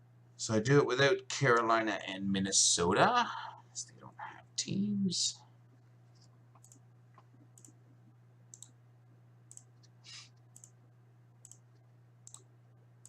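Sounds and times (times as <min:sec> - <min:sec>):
low steady hum: 0:00.0 - 0:13.0
faint clicks: 0:06.2 - 0:07.8, 0:08.5 - 0:08.8, 0:09.5 - 0:10.8, 0:11.4 - 0:12.5.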